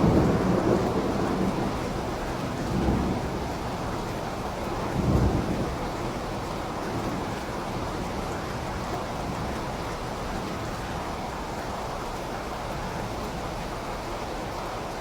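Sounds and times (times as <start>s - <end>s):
low rumble of thunder: 0.0s - 9.9s
steady rain: 0.0s - 15.0s.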